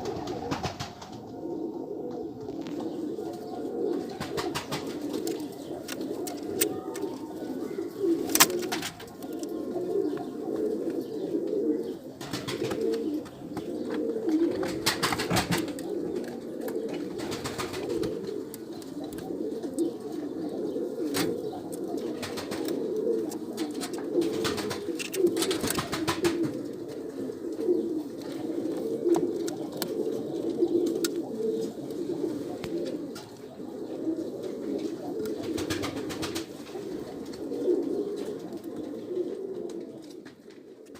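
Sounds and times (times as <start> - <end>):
pigeons cooing: 0.0 - 40.9
sharp clicks or knocks: 8.3 - 9.4.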